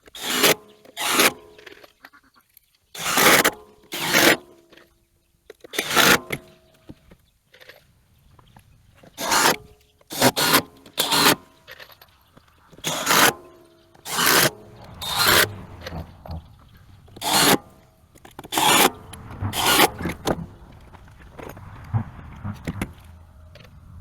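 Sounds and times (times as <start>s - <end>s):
sharp scraping strokes: 0.1s - 1.9s, 9.0s - 24.0s.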